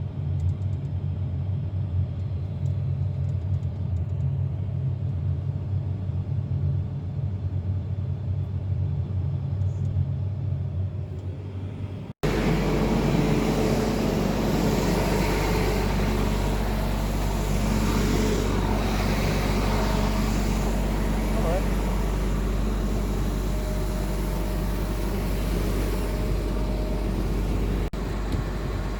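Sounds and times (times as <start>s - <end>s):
machine running with steady hum: 0.0s - 28.9s
farm machinery engine rumbling: 10.7s - 28.9s.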